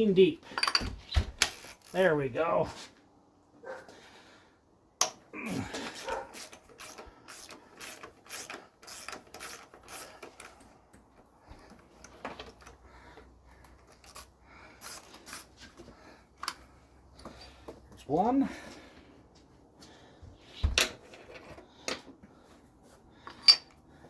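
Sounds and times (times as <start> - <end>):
hand ratchet clicking: 6.4 - 10.7.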